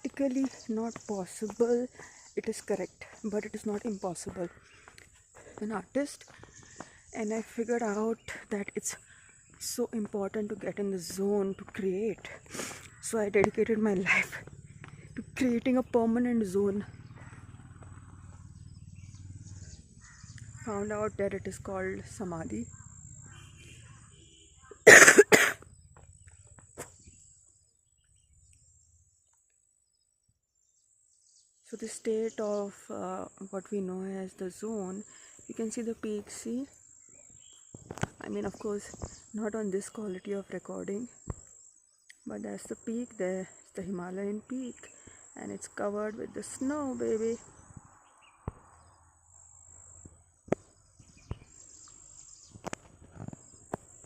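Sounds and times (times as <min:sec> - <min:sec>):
faint outdoor ambience: 0:00.0 - 0:54.0
faint bird chirps: 0:11.4 - 0:24.9, 0:34.8 - 0:54.0.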